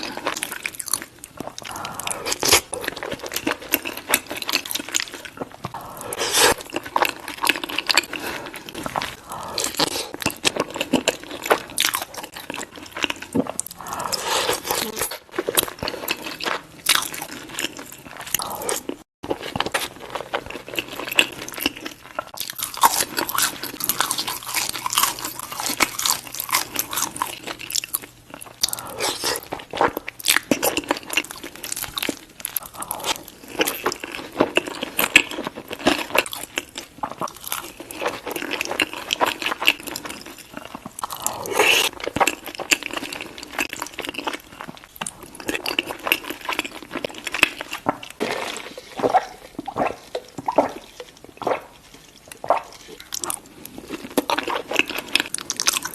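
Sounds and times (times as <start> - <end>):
crunchy chewing of fries: 0.0 - 55.9
wet mouth sounds: 46.6 - 55.9.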